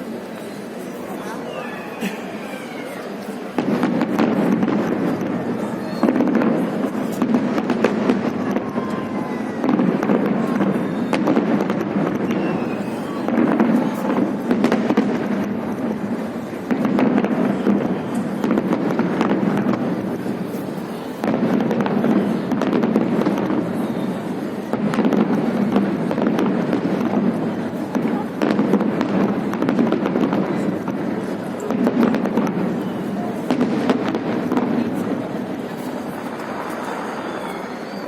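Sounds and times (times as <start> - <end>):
fireworks crackling and popping: 0.0 - 38.0
murmur of crowd voices: 0.0 - 38.0
firework whistles: 8.2 - 14.3, 35.6 - 38.0.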